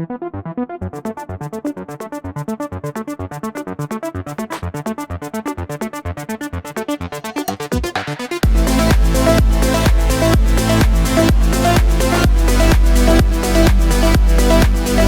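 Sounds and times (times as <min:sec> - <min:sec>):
electronic dance music: 0:06.8 - 0:15.0.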